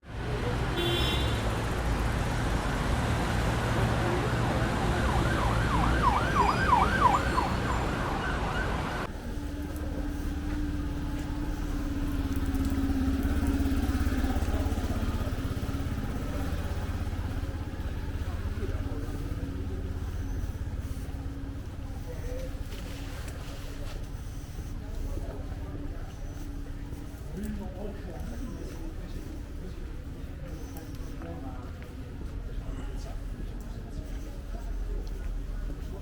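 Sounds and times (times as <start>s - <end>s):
street traffic rumbling: 0.0s - 36.0s
steady engine hum: 0.1s - 36.0s
emergency siren yelping: 3.8s - 9.1s.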